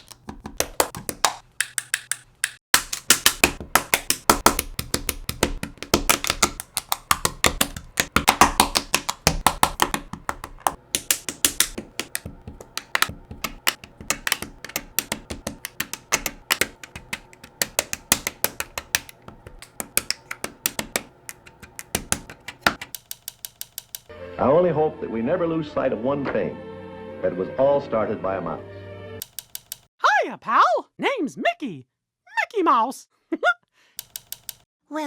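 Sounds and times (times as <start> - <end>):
plastic bricks clicking together: 0.0 - 24.1.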